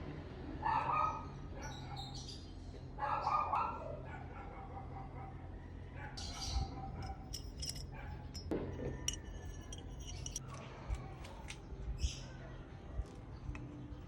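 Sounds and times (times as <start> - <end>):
steady low hum: 6.3 - 10.4
metal parts clicking and clinking: 6.3 - 10.5.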